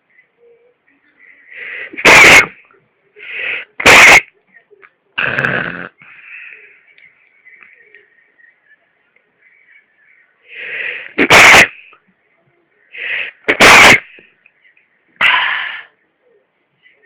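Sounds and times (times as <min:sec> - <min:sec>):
loud sneezes: 0:01.8 - 0:02.7, 0:03.5 - 0:04.3, 0:11.0 - 0:12.0, 0:13.1 - 0:14.2, 0:15.2 - 0:15.9.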